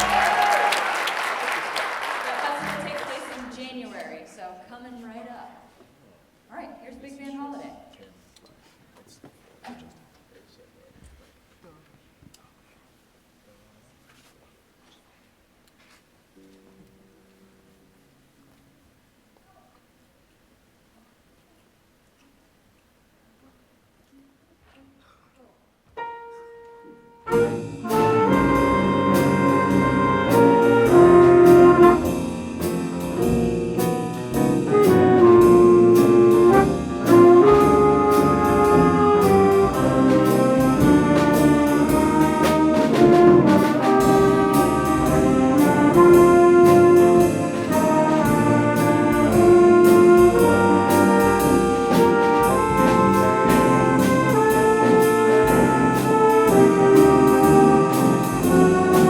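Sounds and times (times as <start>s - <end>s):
big band jazz with brass: 0.0s - 3.5s, 27.2s - 59.0s.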